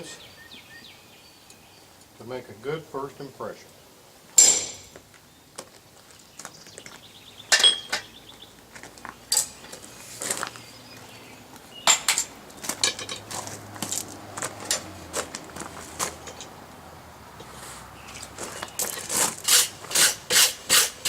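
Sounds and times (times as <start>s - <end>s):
steel tools clinking on metal: 7.5s - 8.1s, 11.9s - 13.3s.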